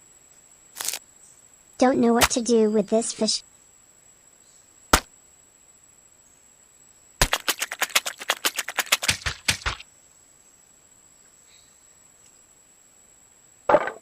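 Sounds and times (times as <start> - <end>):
sharp taps: 7.2 - 9.8.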